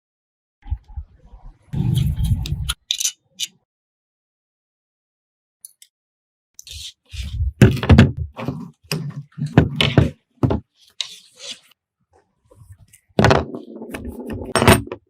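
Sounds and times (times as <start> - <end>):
knocks and thuds: 7.6 - 8.4.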